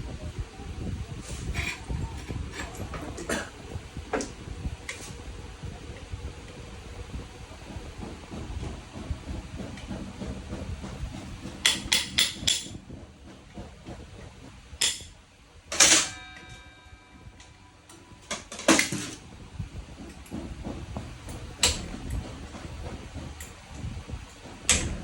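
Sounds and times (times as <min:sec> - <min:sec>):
metal tools knocking and clinking: 0:11.6 - 0:12.8, 0:14.8 - 0:15.1, 0:15.7 - 0:16.7, 0:17.3 - 0:19.2
metallic clank with ring: 0:15.7 - 0:19.2.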